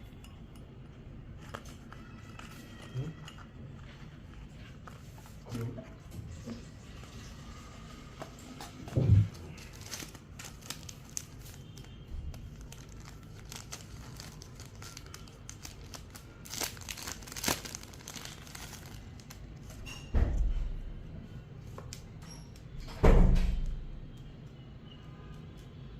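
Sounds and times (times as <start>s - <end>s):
packaging crinkling and tearing: 9.2s - 19.9s
small clicks and crackles: 9.5s - 19.4s.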